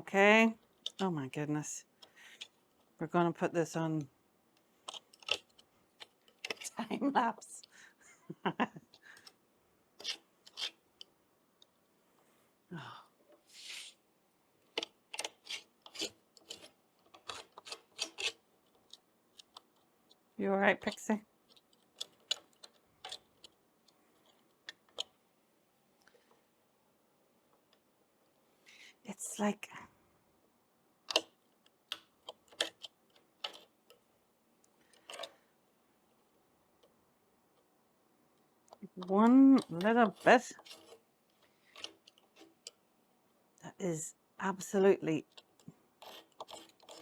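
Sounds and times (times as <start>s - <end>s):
hand tool scraping wood: 10.0s - 10.9s, 15.1s - 18.4s, 39.1s - 41.0s, 45.4s - 47.0s
short scrape: 13.4s - 14.0s.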